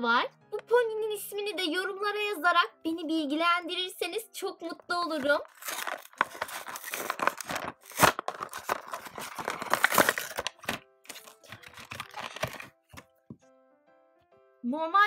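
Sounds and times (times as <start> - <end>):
packaging tearing and crinkling: 5.1 - 13.0.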